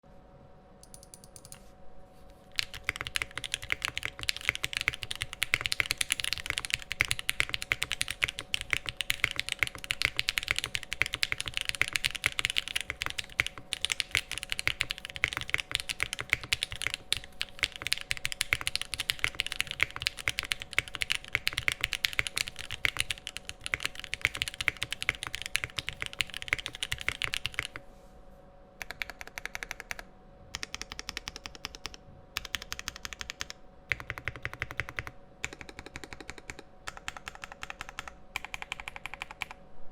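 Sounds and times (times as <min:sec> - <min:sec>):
fast mechanical keyboard typing: 0:00.8 - 0:01.6, 0:02.5 - 0:27.8, 0:28.8 - 0:39.6.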